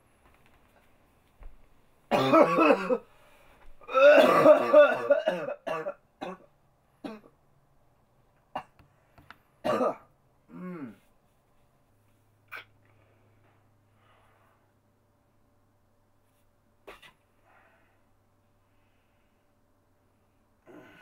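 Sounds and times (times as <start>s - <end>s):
person coughing: 2.1s - 3.1s, 3.8s - 7.3s, 9.6s - 11.0s, 16.8s - 17.2s.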